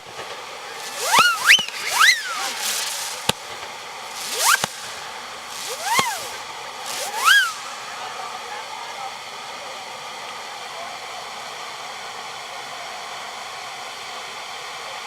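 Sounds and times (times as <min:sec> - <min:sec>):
firework cracks: 0:00.6 - 0:08.3
whistling fireworks: 0:00.6 - 0:08.4.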